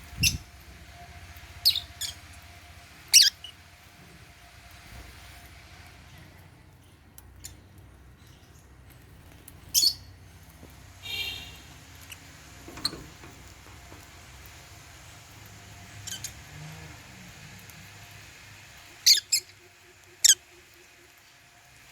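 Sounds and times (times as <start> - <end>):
lovebirds chirping and squeaking: 0.2 - 0.5, 1.6 - 2.2, 3.1 - 3.5, 9.6 - 10.1, 12.0 - 13.2, 15.9 - 16.4, 19.0 - 20.5.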